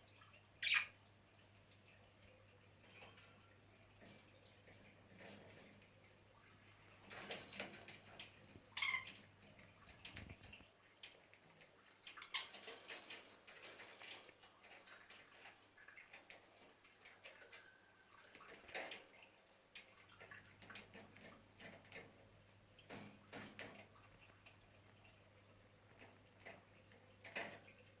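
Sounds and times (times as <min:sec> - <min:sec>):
budgerigars chirping: 0:00.6 - 0:00.9
light clicks and scratches: 0:01.3 - 0:28.0.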